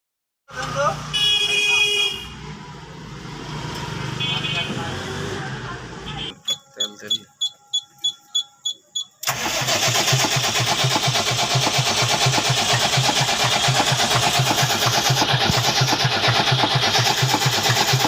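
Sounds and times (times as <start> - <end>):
diesel engine starting and running: 2.3 - 18.0
warning buzzer beeping: 6.1 - 9.2.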